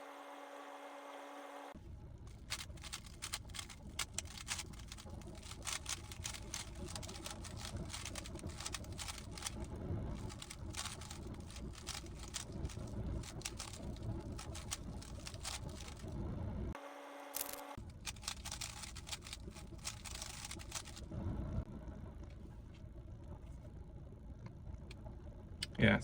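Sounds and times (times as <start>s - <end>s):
puzzle cube plastic clicks: 2.3s - 9.6s, 10.2s - 16.0s, 17.4s - 21.0s.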